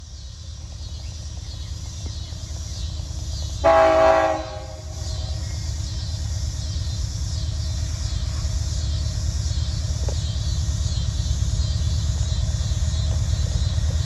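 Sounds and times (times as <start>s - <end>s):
train rumble: 0.0s - 14.0s
locomotive air horn blast: 3.6s - 5.0s.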